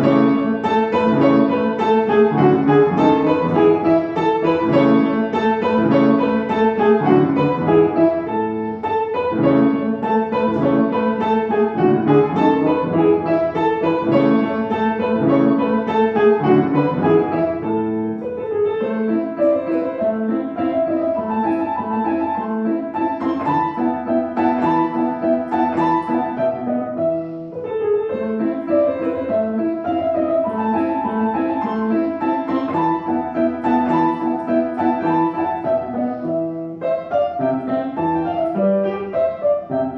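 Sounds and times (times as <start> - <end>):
solo piano playing: 0.0 - 39.9.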